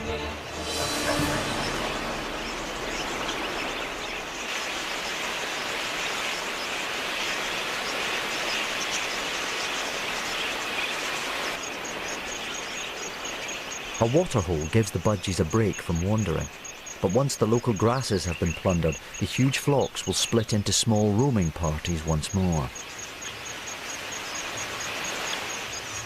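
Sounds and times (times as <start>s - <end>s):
flock of budgerigars chattering: 2.5s - 22.7s.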